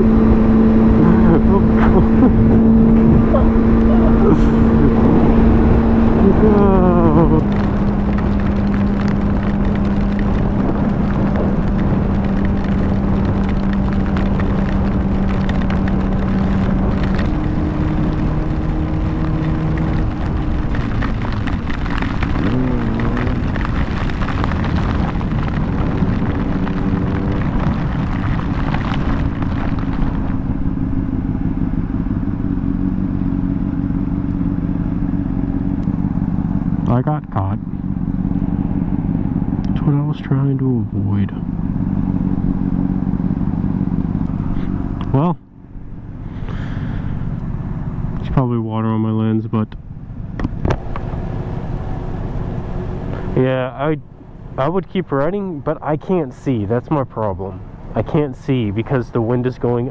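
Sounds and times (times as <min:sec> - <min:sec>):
wind rush: 0:00.0 - 0:31.6
motorcycle engine running: 0:00.0 - 0:40.0.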